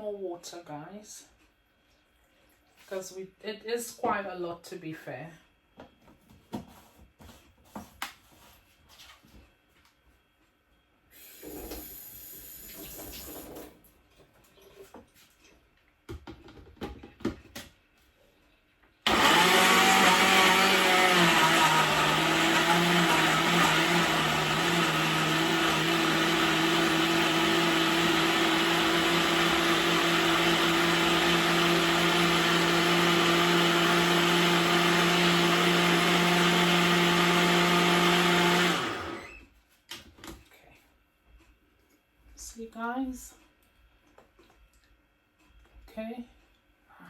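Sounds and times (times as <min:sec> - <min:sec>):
blender running: 0:19.1 - 0:39.3.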